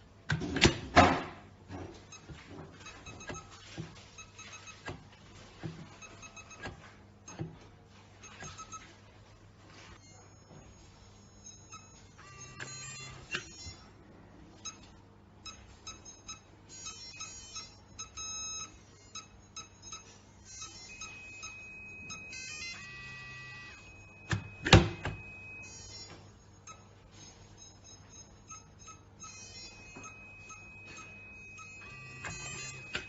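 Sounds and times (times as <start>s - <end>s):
electronic lock beeping: 5.9s - 7.5s, 10.0s - 13.9s, 15.5s - 33.0s.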